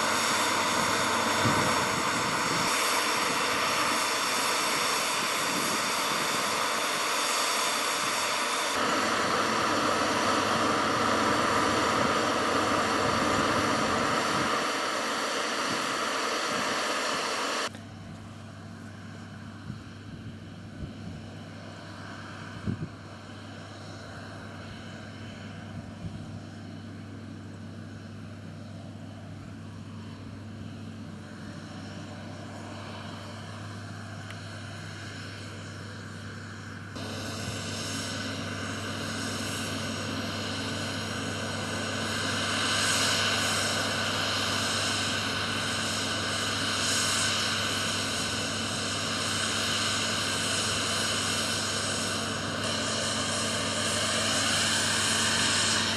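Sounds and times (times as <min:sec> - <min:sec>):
diesel engine running: 0:00.0 - 0:55.9
hiss and mechanical noise: 0:00.0 - 0:55.9.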